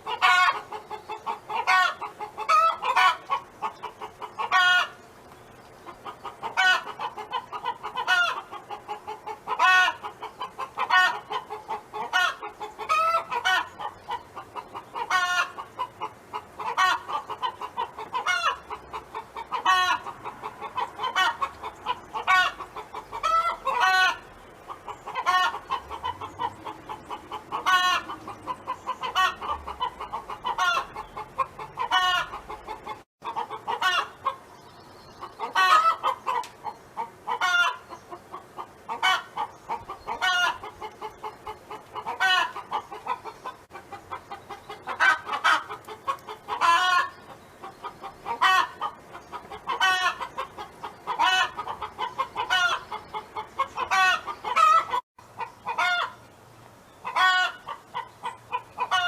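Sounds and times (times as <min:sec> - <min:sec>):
hen clucking: 0:00.0 - 0:56.3, 0:57.0 - 0:59.0.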